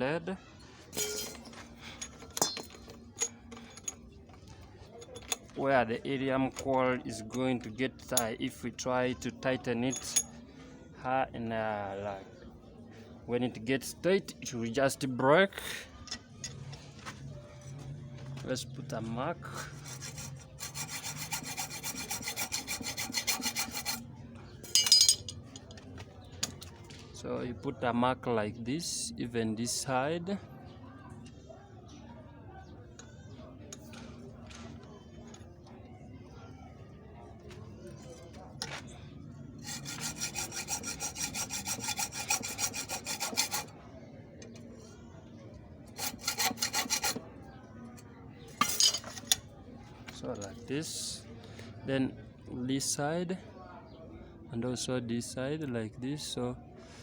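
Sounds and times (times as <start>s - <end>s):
metallic scrape: 0.9s - 3.9s, 19.6s - 24.0s, 39.6s - 43.7s
hacksaw rasping on metal: 1.0s - 2.9s, 19.6s - 24.0s, 39.6s - 43.7s, 45.9s - 47.2s.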